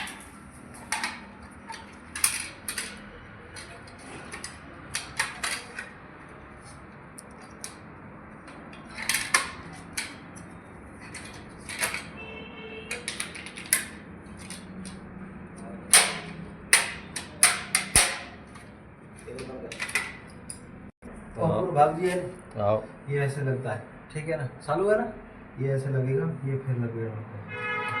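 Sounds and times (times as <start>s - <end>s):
clicks and knocks of tools: 0.0s - 12.2s, 12.9s - 15.1s, 15.8s - 20.7s.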